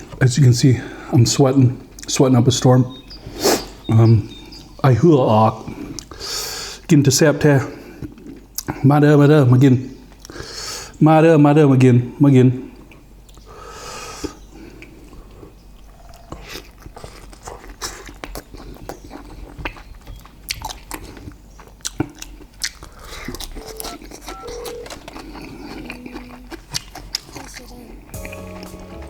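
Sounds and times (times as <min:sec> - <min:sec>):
person chewing food: 0:14.2 - 0:28.7.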